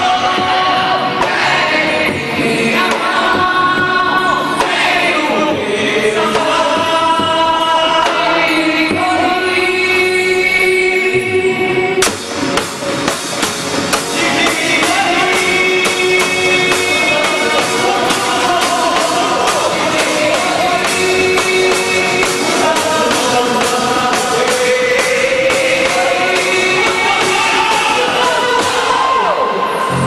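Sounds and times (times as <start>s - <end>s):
loud music with sung vocals: 0.0s - 30.0s
steady percussion beat: 12.0s - 29.3s.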